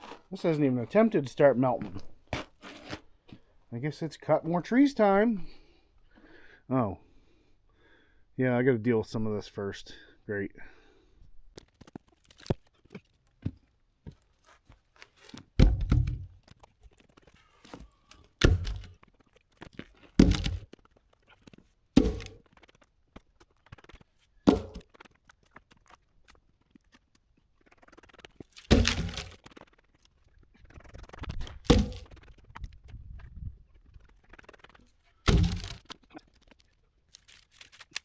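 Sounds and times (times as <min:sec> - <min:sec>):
twigs snapping: 0:11.6 - 0:13.2, 0:28.2 - 0:30.0, 0:34.0 - 0:38.0
branches thudding: 0:17.6 - 0:19.0, 0:20.0 - 0:20.8, 0:22.0 - 0:22.4, 0:24.4 - 0:24.9, 0:28.5 - 0:29.4, 0:31.4 - 0:32.3, 0:35.2 - 0:38.0.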